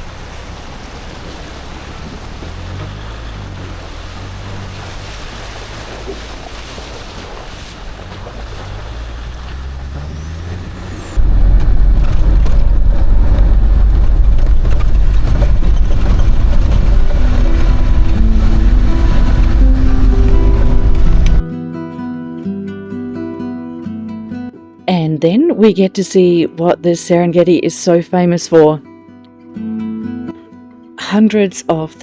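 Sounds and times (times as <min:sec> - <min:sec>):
tyres hissing through water: 0:00.0 - 0:11.1
car engine rumble: 0:00.0 - 0:21.4
music with heavy deep bass: 0:11.1 - 0:21.5.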